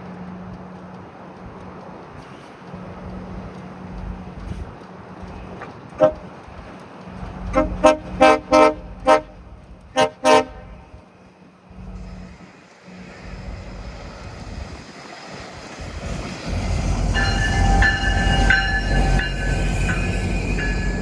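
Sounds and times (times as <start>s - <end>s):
train rumble: 0.0s - 21.0s
train horn toot: 7.5s - 9.4s, 10.0s - 10.9s
metallic wheel and brake squealing: 16.4s - 21.0s.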